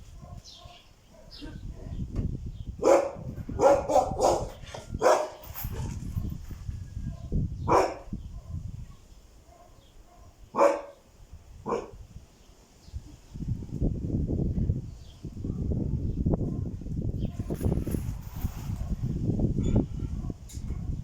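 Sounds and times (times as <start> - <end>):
dogs barking: 0.2 - 2.0, 2.8 - 5.9, 7.1 - 8.6, 9.4 - 11.0, 11.6 - 12.0.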